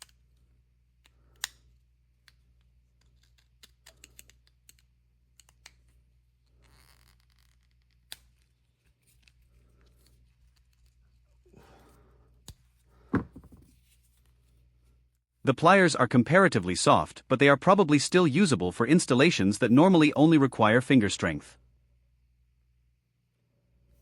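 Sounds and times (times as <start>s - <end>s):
plastic tools clicking: 1.0s - 5.9s.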